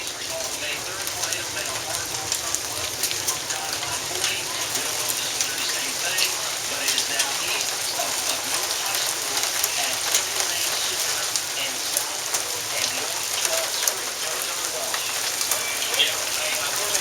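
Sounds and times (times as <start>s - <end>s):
heavy rain falling: 0.0s - 17.0s
raindrops ticking on hard surfaces: 0.0s - 17.0s.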